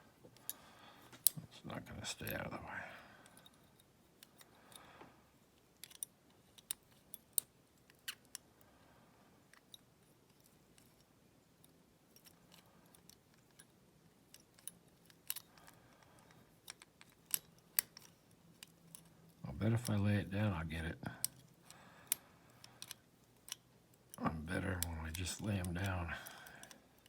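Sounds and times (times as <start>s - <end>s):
soft handling rustle: 0.0s - 27.0s
metallic clicks of lock picking: 3.2s - 4.9s, 5.6s - 8.5s, 9.5s - 20.0s, 21.1s - 27.0s.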